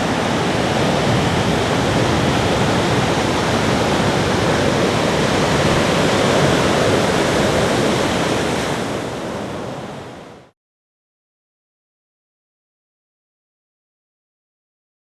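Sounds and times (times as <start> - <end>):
ocean waves breaking on beach: 0.0 - 10.5.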